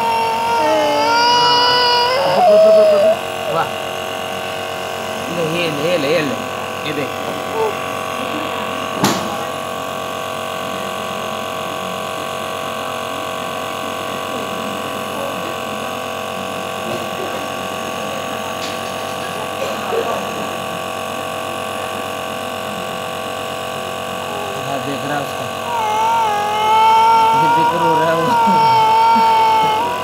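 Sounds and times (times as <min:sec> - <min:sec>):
motor electric hum: 0:00.0 - 0:10.7, 0:23.0 - 0:30.0.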